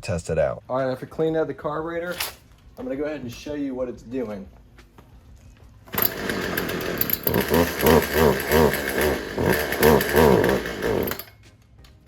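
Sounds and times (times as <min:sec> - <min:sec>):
chainsaw engine surging: 0:05.9 - 0:11.3.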